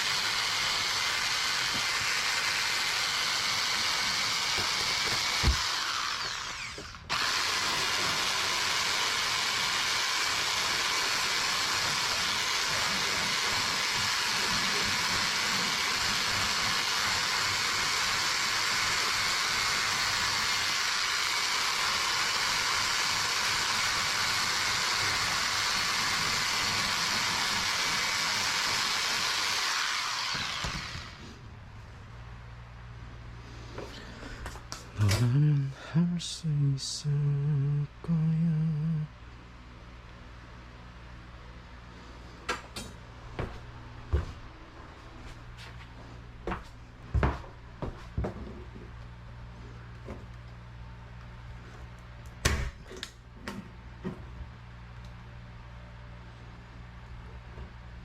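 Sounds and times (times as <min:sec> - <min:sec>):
power tool whining: 0:00.0 - 0:31.6.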